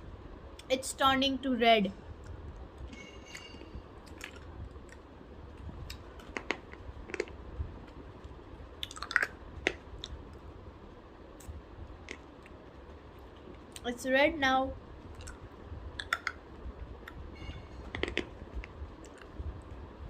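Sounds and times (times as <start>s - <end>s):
person sucking hard candy: 8.8s - 9.3s
candy clicking against teeth: 8.8s - 10.2s, 16.0s - 16.4s.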